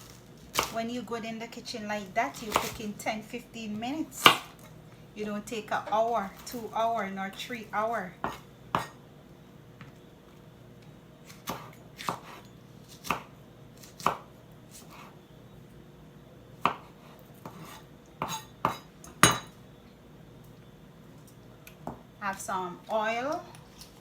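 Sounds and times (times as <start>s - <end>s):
knife chopping on cutting board: 2.3s - 2.8s, 8.2s - 9.0s, 11.3s - 15.1s, 16.6s - 19.5s.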